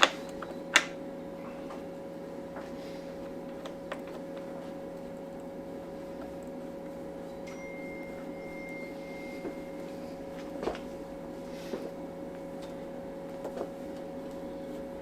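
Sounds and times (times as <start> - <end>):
steady low hum: 0.0 - 15.0
faint high tone: 7.4 - 10.2.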